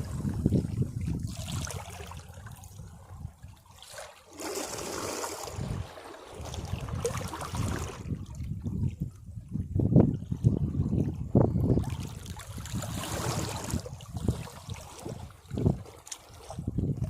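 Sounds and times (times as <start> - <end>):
sea waves washing against rocks: 12.5 - 14.2.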